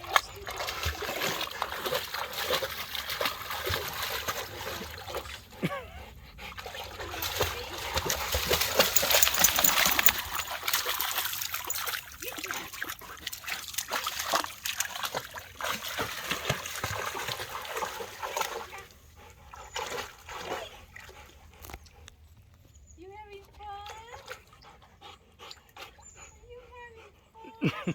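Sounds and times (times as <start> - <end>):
dog splashing through water: 0.0 - 5.5, 6.6 - 21.4.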